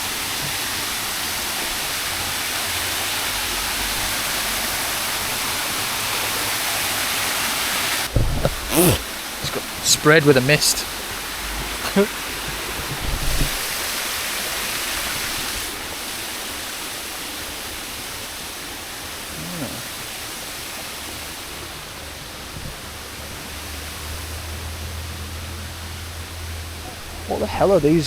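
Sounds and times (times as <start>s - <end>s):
misting spray hissing: 8.1s - 10.8s.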